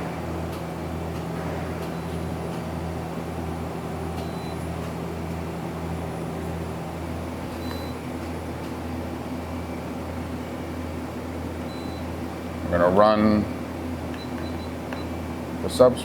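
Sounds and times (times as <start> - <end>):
machine humming and throbbing: 0.0 - 12.0.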